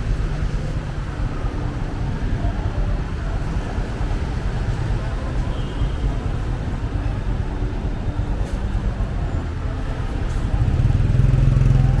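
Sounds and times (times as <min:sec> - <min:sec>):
traffic engine rumble: 0:00.0 - 0:12.0
vehicle engine approaching: 0:10.5 - 0:12.0.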